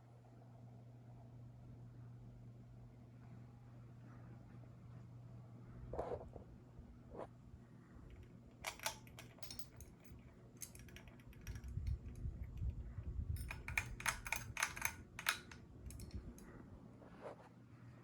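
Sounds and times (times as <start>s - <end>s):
ceiling fan motor humming: 6.6s - 18.0s
sharp clicking: 13.4s - 16.5s.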